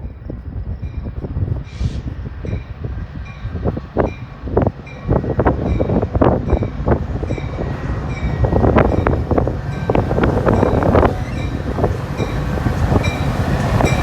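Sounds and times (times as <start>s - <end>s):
train low rumble: 0.0s - 14.0s
train wheels clacking: 4.0s - 14.0s.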